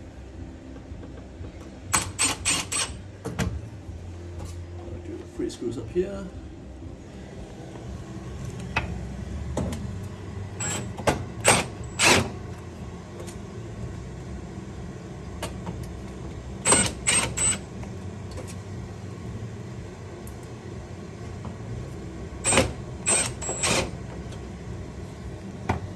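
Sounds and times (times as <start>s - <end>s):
steady low hum: 0.0s - 25.9s
screwdriver bursts driving screws: 1.9s - 3.0s.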